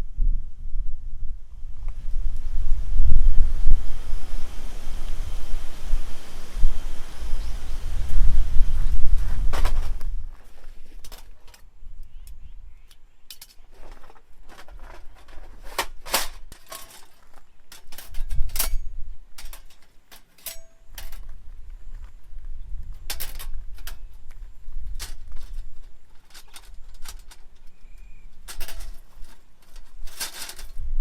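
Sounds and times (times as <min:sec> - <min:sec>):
sharp clicks and knocks: 0:19.4 - 0:21.3, 0:25.0 - 0:30.8.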